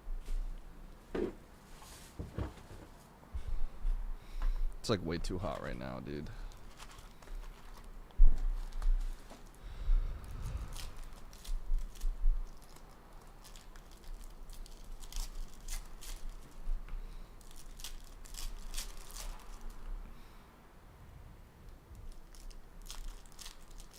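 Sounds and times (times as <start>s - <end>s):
card wrappers tearing and crinkling: 6.5s - 7.9s, 10.7s - 16.6s, 17.4s - 19.8s, 22.0s - 23.9s.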